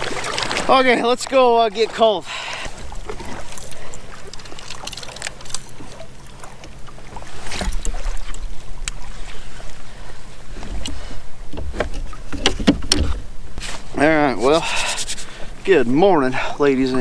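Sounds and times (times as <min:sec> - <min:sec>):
low thumps against hull: 0:10.5 - 0:13.4.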